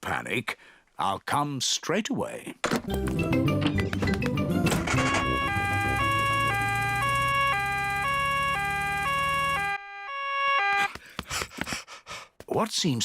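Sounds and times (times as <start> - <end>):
cartoon two-tone siren: 4.7 - 11.0.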